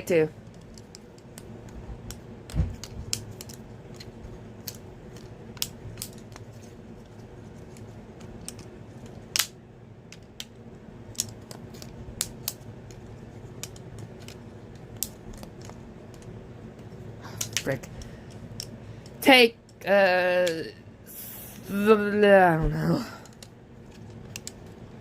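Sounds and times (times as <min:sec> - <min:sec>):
steady low hum: 0:00.0 - 0:25.0
plastic pieces clicking and clacking: 0:10.1 - 0:16.3, 0:23.2 - 0:24.6.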